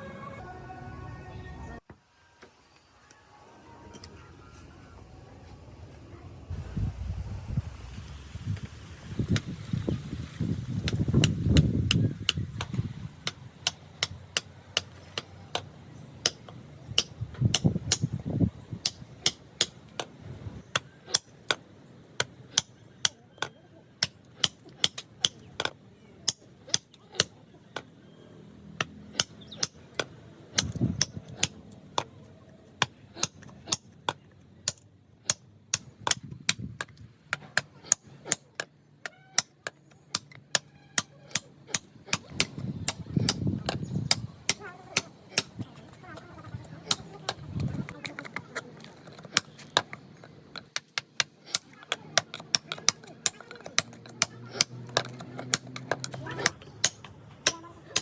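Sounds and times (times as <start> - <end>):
hammer striking wood: 32.8 - 38.7, 39.4 - 45.7.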